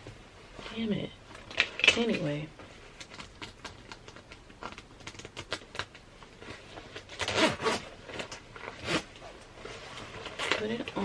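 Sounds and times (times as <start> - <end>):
metal zipper scraping: 6.5 - 11.0.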